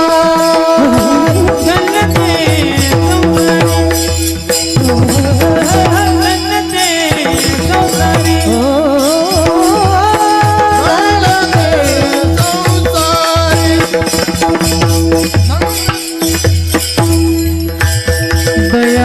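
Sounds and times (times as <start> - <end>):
person singing ornamented melody: 0.0 - 4.0, 4.8 - 13.9
jingling percussion: 0.0 - 19.0.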